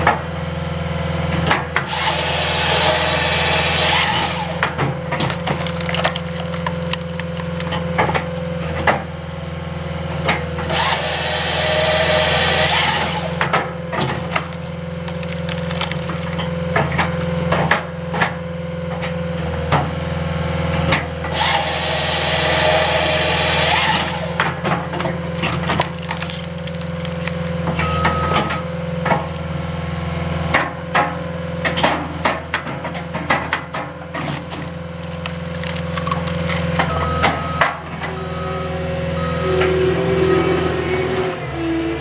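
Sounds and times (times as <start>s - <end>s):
skid steer engine running: 0.0s - 42.0s
saw cutting through log: 1.8s - 7.9s, 10.6s - 16.5s, 21.2s - 27.8s
wood knocking and cracking: 4.6s - 8.4s, 13.4s - 17.8s, 24.4s - 27.8s, 33.2s - 36.9s.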